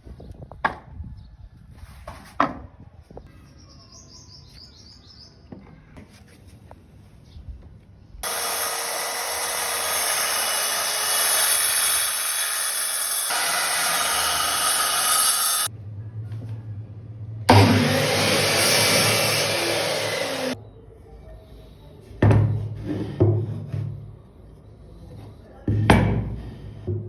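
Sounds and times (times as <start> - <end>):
power tool cutting wood: 8.2 - 15.7, 17.5 - 20.6.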